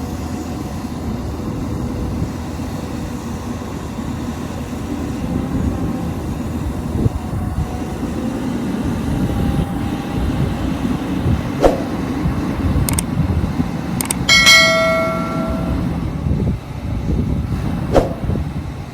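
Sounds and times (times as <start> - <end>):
sharp metal clanks: 14.0 - 16.0
loud ringing metallic clang: 14.3 - 16.1.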